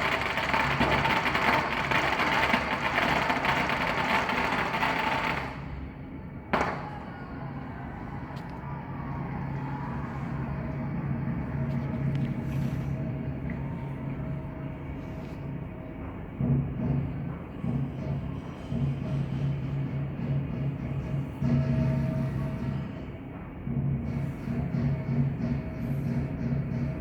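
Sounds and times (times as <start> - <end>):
firecrackers crackling: 0.0 - 13.4
steady hum: 0.0 - 27.0.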